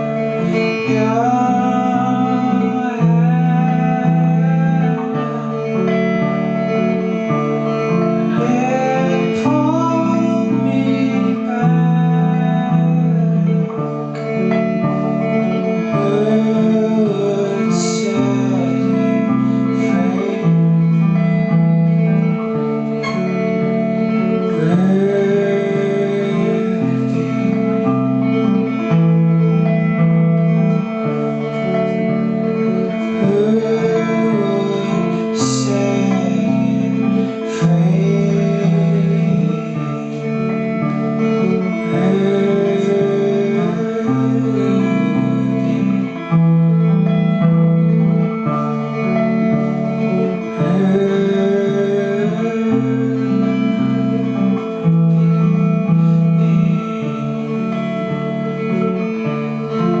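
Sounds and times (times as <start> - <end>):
person singing: 0.0 - 60.0.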